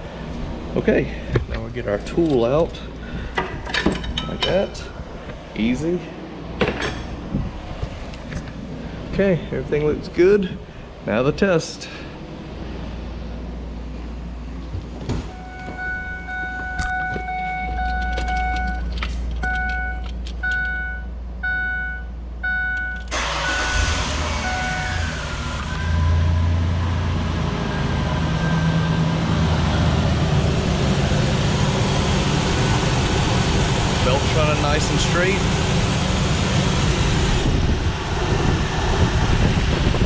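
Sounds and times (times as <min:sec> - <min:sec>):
car warning chime beeping: 0:15.3 - 0:24.9
car engine cranking and running: 0:23.0 - 0:38.0.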